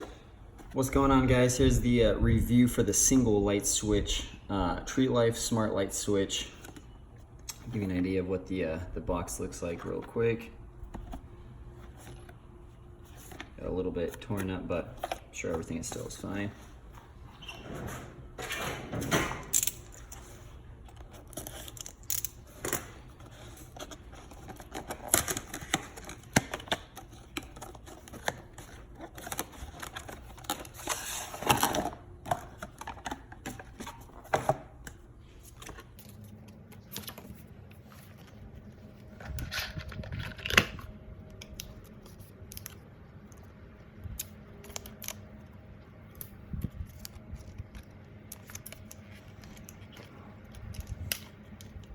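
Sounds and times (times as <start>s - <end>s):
cardboard packaging rustling: 20.2s - 40.9s.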